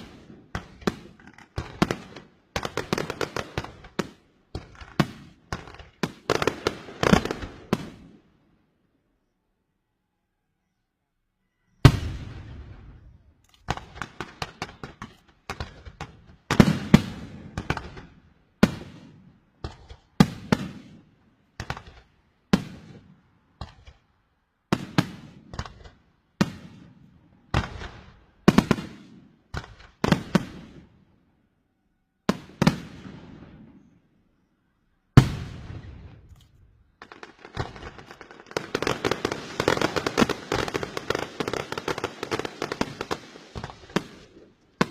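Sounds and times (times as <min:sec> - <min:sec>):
fireworks bangs: 0:11.8 - 0:24.0, 0:35.2 - 0:36.3, 0:37.0 - 0:44.9
firecrackers crackling: 0:37.0 - 0:44.9.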